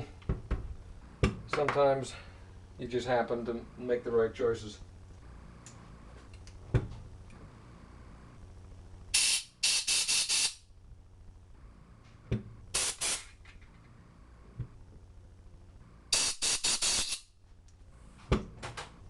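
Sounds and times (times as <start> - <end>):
compressed air bursts: 9.1 - 10.6, 12.7 - 13.4, 16.1 - 17.3.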